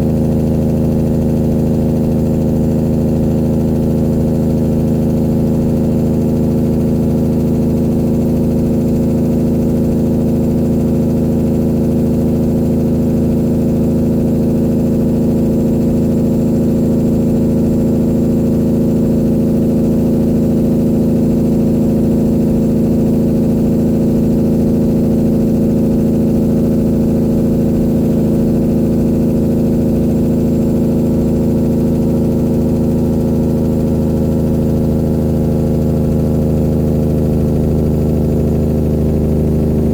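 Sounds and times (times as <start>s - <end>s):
diesel truck engine droning: 34.8s - 39.9s.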